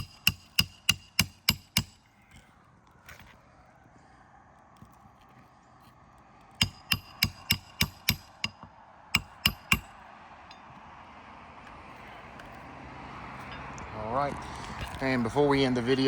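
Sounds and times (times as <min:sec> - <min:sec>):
hammer striking nail: 0:00.0 - 0:02.0, 0:06.6 - 0:09.9.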